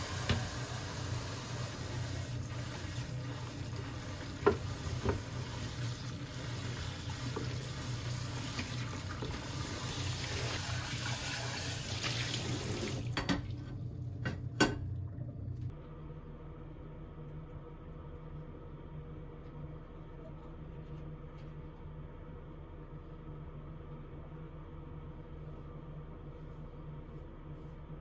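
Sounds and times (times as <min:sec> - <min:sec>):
tap water running into sink: 0:00.0 - 0:13.4.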